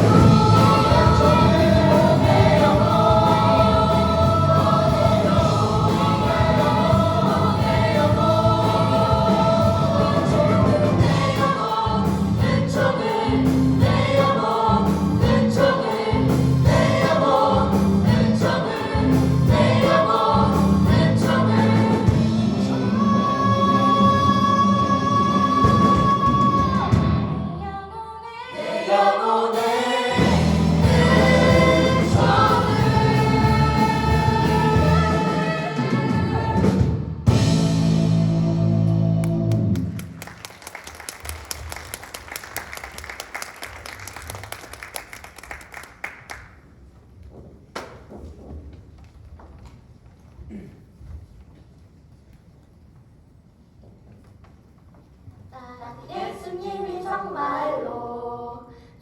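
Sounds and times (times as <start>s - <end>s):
band accompaniment: 0.0s - 27.4s, 29.5s - 40.2s
choir singing gospel song: 0.0s - 38.8s, 56.0s - 59.0s.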